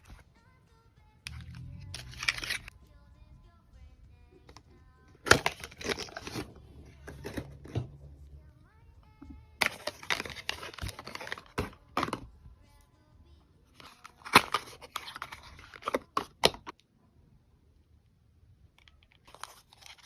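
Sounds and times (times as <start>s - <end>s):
packaging tearing and crinkling: 1.3s - 2.7s, 5.3s - 6.5s, 9.6s - 11.8s, 19.2s - 20.0s.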